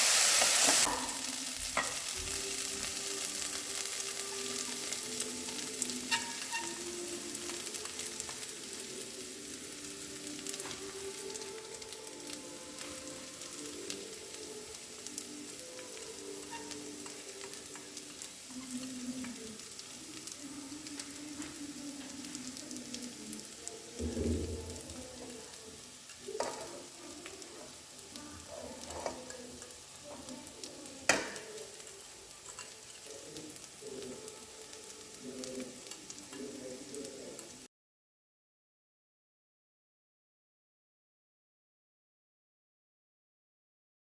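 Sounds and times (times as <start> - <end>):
curry sizzling in a pan: 0.0 - 37.7
spoon knocking against pan: 31.1 - 31.5.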